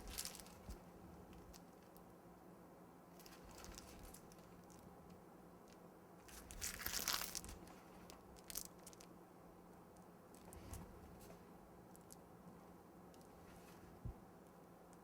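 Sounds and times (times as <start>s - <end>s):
piping bag crinkling: 0.0s - 1.9s, 3.2s - 9.1s.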